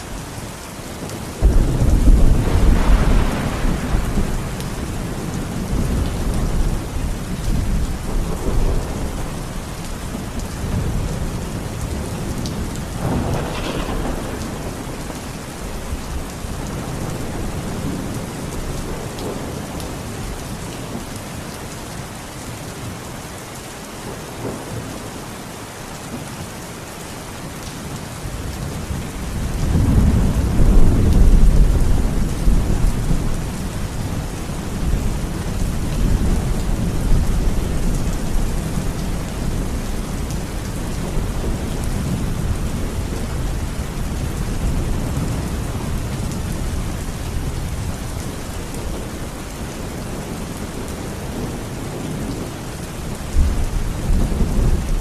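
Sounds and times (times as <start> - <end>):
steady rain: 0.0 - 55.0
thunder rumbling: 1.0 - 20.1, 28.4 - 55.0
thunder crack: 1.4 - 4.9, 12.9 - 18.2.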